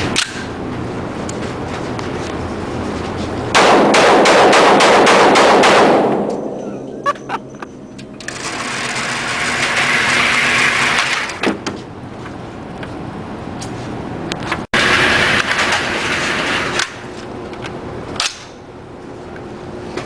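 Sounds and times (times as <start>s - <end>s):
rapid gunfire: 3.6s - 6.3s.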